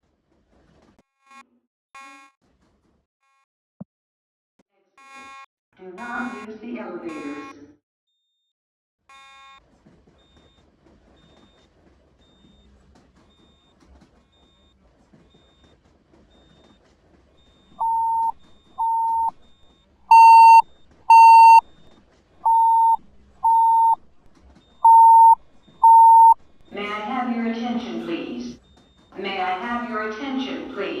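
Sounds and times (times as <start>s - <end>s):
fire alarm beeping: 17.8s - 19.3s, 20.1s - 21.6s, 22.5s - 24.0s, 24.8s - 26.4s.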